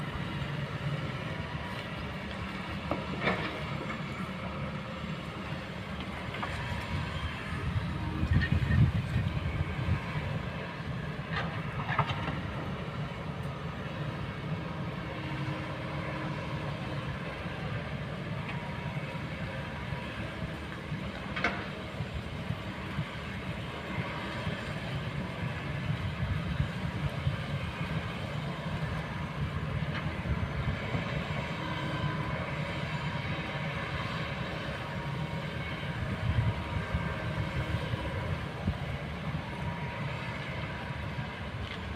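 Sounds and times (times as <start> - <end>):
excavator diesel engine running: 0.0 - 41.9.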